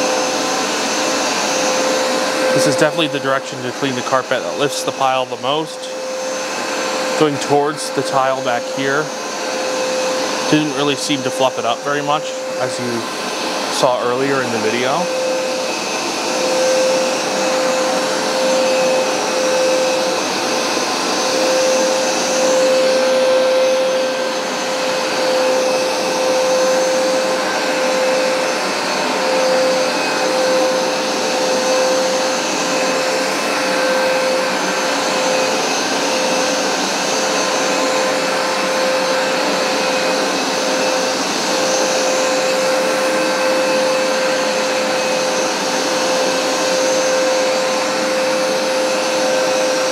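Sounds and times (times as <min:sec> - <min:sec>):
carpet cleaner motor whine: 0:00.0 - 0:49.9
suction and brush noise: 0:01.1 - 0:19.8.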